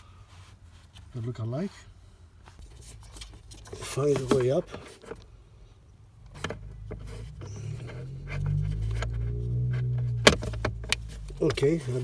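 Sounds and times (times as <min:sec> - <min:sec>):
plastic part clicks and knocks: 0:10.2 - 0:11.6.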